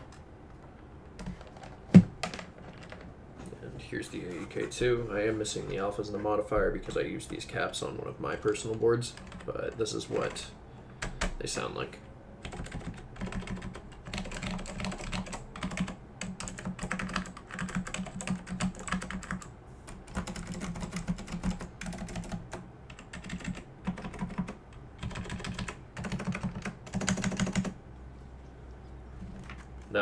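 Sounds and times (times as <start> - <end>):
keyboard typing: 8.7 - 10.3, 12.4 - 27.8.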